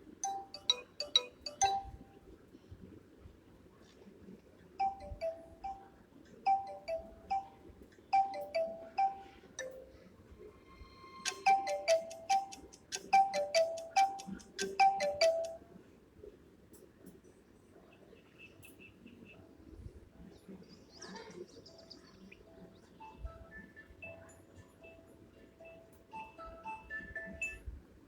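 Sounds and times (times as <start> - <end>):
fast ticking beat: 0.2 - 2.0, 8.2 - 9.8, 11.2 - 15.6.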